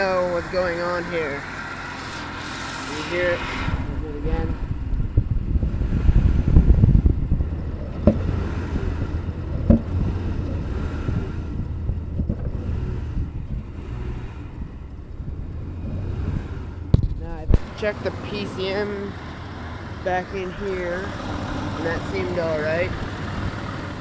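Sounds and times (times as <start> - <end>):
car engine running rough: 0.0 - 24.0
engine backfire pops: 7.8 - 13.9, 16.8 - 17.8.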